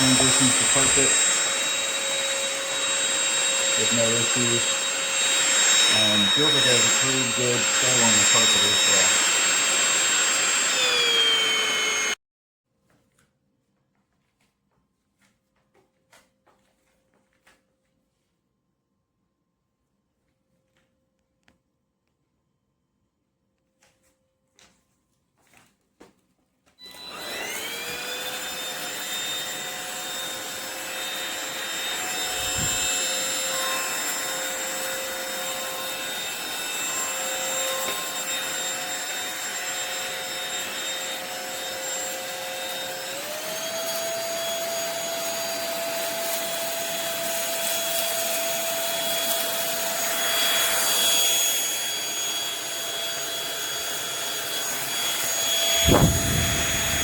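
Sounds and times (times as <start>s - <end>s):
stick vacuum cleaner motor whine: 0.0s - 12.2s, 26.8s - 57.0s.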